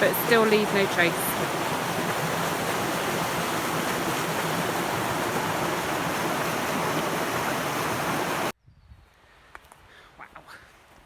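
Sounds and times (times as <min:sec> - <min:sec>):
river rushing over rocks: 0:00.0 - 0:08.5.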